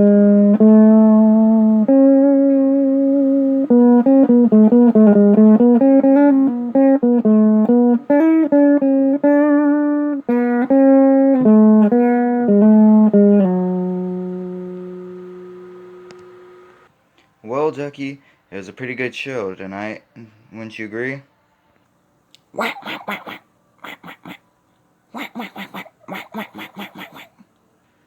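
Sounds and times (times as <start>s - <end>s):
plucked string instrument melody: 0.0s - 16.9s.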